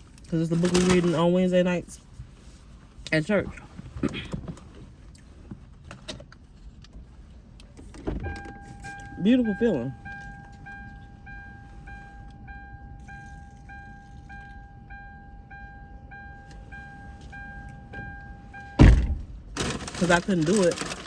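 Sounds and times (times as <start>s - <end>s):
car door shutting: 7.7s - 9.1s, 16.4s - 20.0s
steady warning tone: 8.2s - 19.4s
car warning chime dinging: 8.2s - 21.0s.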